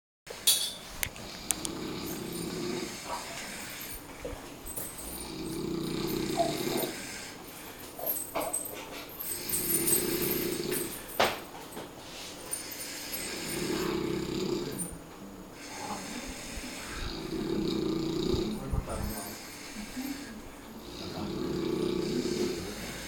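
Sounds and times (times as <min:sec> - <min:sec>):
person snoring: 0:01.2 - 0:04.0, 0:05.0 - 0:07.4, 0:09.2 - 0:11.1, 0:12.8 - 0:15.0, 0:15.6 - 0:23.0.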